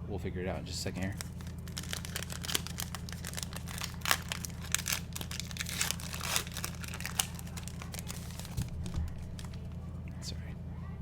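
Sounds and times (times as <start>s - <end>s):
steady low hum: 0.0s - 11.0s
foil wrapper crinkling and tearing: 1.0s - 9.8s.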